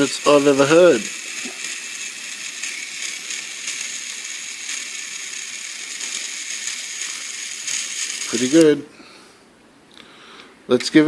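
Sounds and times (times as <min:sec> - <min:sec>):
toy engine gear whir: 0:00.0 - 0:08.8.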